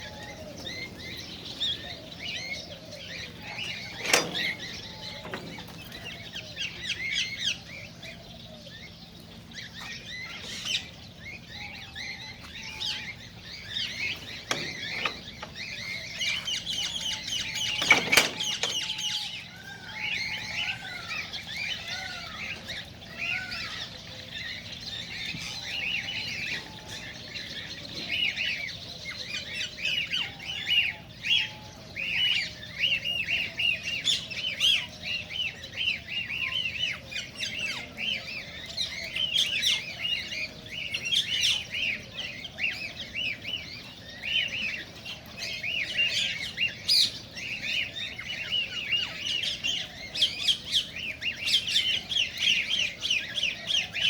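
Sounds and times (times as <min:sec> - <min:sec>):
cockatiels chirping: 0:20.1 - 0:54.0.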